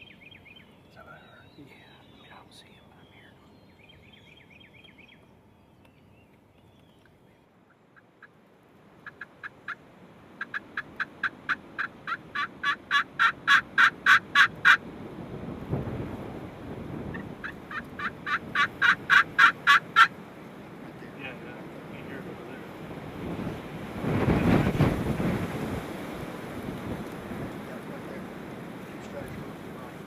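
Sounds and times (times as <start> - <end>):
wild turkey yelping: 9.0 - 9.8, 10.4 - 14.8, 17.1 - 20.2.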